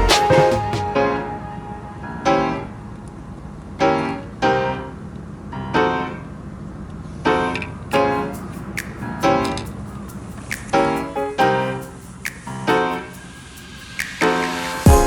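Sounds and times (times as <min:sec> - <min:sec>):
slow piano chords: 0:00.0 - 0:09.6.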